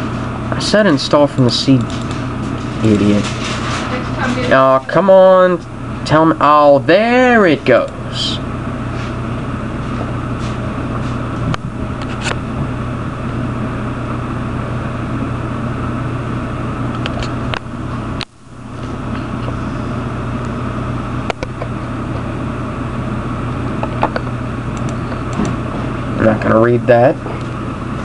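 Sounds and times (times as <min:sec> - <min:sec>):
computer humming: 0:00.0 - 0:28.0
sharp clicks: 0:23.9 - 0:25.6.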